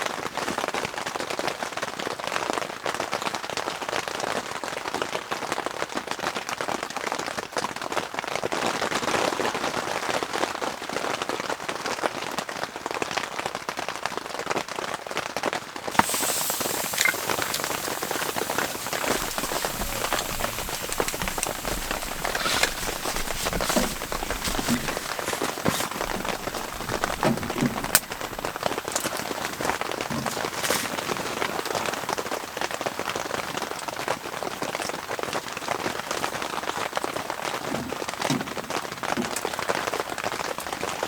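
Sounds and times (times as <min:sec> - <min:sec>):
rain pattering on tent fabric: 0:15.9 - 0:41.0.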